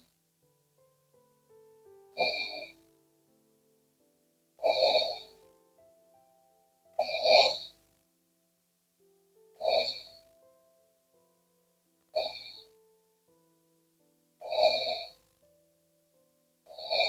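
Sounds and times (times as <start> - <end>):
soft background music: 0.0 - 17.0
woman snoring: 4.6 - 5.4, 7.0 - 7.8, 9.6 - 10.2, 12.2 - 12.7, 14.4 - 15.2, 16.7 - 17.0.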